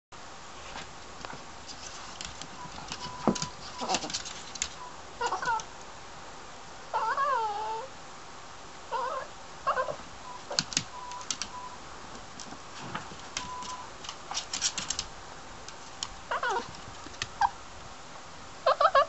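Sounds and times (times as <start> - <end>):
cat meowing: 5.2 - 5.6.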